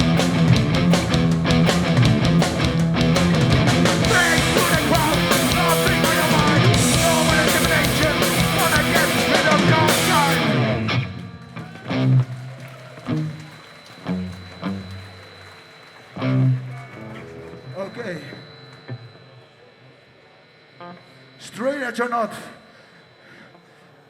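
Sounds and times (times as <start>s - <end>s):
punk band playing: 0.0s - 18.6s.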